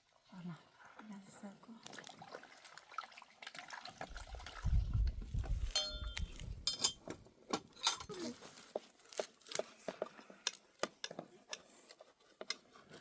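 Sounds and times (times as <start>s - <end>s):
liquid sloshing: 1.8s - 7.0s
low rumble: 4.2s - 6.7s
struck vessel ringing: 5.6s - 7.0s
dishes clinking: 5.6s - 7.1s, 7.8s - 8.2s.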